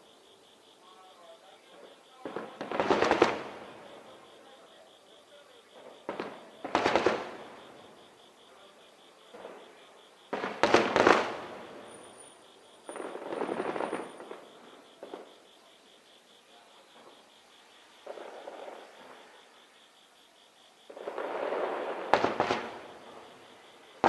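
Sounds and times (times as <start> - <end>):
firework crackling: 2.3 - 3.9, 6.0 - 7.7, 10.3 - 15.4, 20.9 - 24.0.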